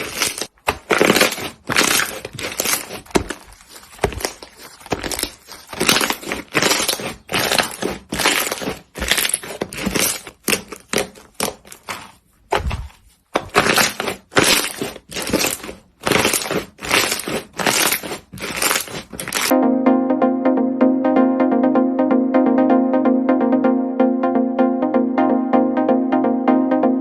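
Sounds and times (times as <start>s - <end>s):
slime squeezed and crackling: 0.0s - 19.5s.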